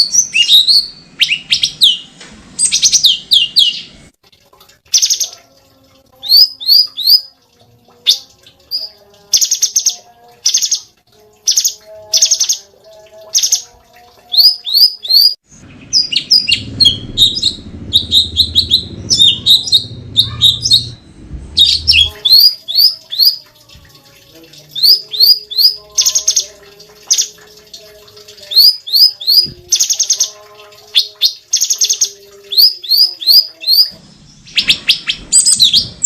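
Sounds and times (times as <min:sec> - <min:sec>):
bird harsh buzzy calls: 0:14.4 - 0:21.0
low rumble: 0:15.5 - 0:22.2.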